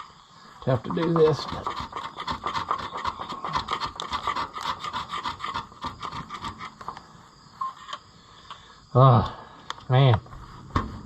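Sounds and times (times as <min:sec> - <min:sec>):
hand scraper scraping gasket: 0:00.7 - 0:06.9.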